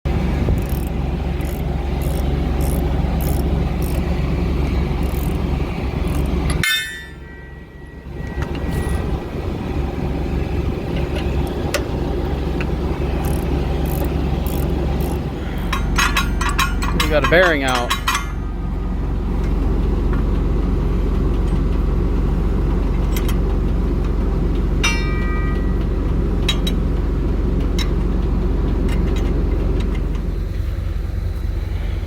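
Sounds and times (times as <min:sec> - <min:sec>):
tractor engine running: 0:00.0 - 0:32.0.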